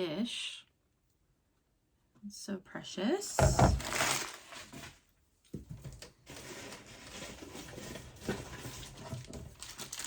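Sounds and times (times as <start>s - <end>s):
packing material rustling: 3.6s - 5.0s, 6.2s - 10.0s.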